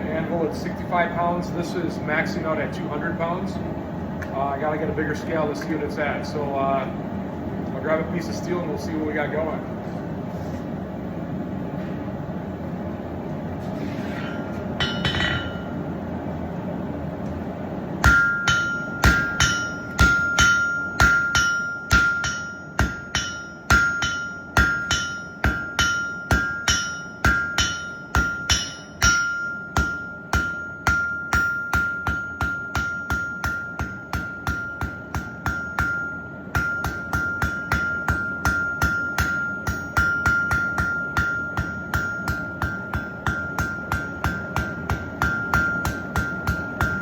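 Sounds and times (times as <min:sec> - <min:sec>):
hammer ringing on anvil: 0:14.8 - 0:15.8, 0:18.0 - 0:47.0.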